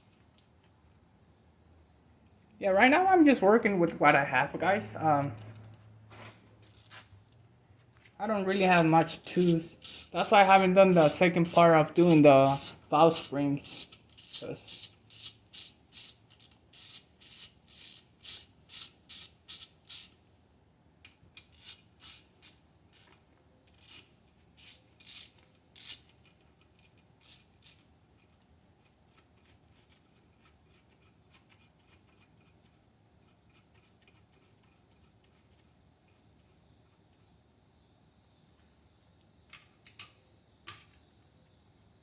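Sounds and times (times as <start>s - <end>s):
hand tool rasping: 8.5s - 20.1s.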